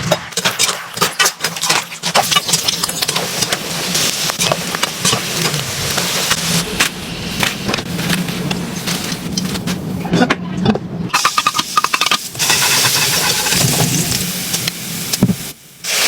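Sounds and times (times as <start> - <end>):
food sizzling in hot oil: 11.1 - 16.0.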